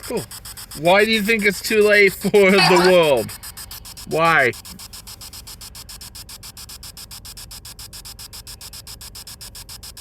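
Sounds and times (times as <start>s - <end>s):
pulsing radio static: 0.0s - 10.0s.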